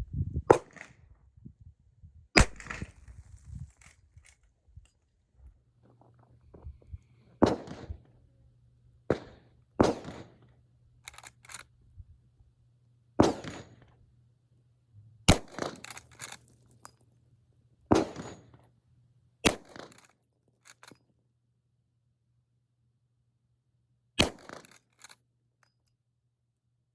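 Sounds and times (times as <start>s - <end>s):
rifle shots: 0.5s - 0.9s, 2.4s - 3.0s, 7.4s - 7.9s, 9.1s - 10.3s, 13.2s - 13.8s, 15.3s - 16.2s, 17.9s - 18.5s, 19.5s - 20.0s, 24.2s - 24.8s
rifle lever metallic clicks: 11.1s - 11.7s, 15.3s - 16.9s, 19.5s - 21.0s, 24.2s - 25.2s.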